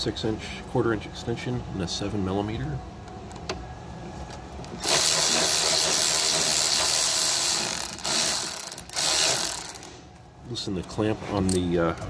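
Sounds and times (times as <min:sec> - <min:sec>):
ratchet clicking rapidly: 0:04.8 - 0:09.9.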